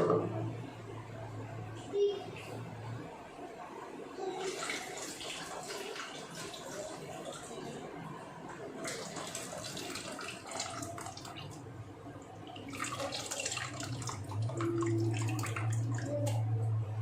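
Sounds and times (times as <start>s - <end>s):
low hum with higher tones: 0.0s - 4.8s, 11.7s - 17.0s
liquid pouring and splashing: 4.3s - 7.9s, 8.6s - 11.7s, 12.3s - 16.5s.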